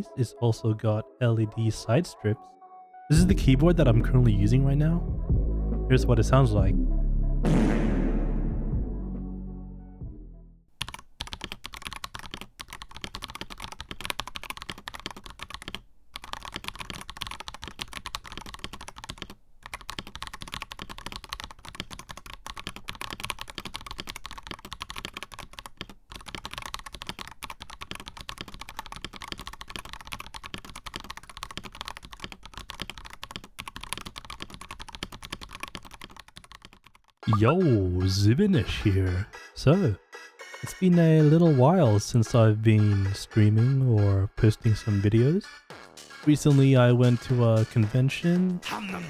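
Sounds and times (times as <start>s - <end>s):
music: 0.0s - 10.7s, 37.2s - 48.8s
mechanical keyboard typing: 10.8s - 37.2s.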